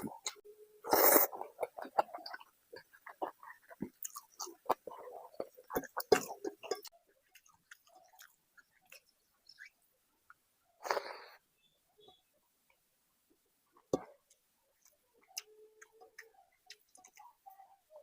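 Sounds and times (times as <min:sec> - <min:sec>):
close chewing and biting food: 0:01.1 - 0:09.8.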